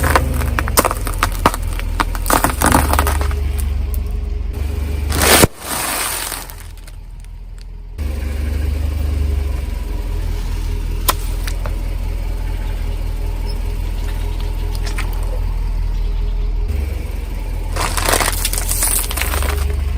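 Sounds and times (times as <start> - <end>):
car rolling over objects: 0.0 - 4.1, 4.8 - 7.7, 17.5 - 19.9
car engine rumbling: 0.0 - 19.9
loud crushing burst: 5.1 - 7.0.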